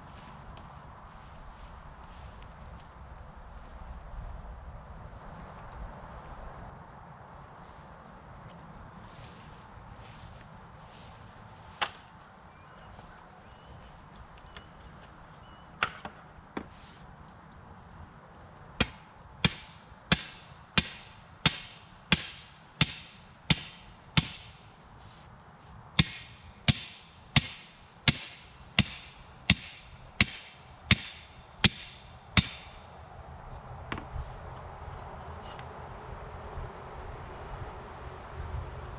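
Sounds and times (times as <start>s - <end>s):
hammer striking fence post: 18.8s - 24.6s, 26.0s - 32.8s.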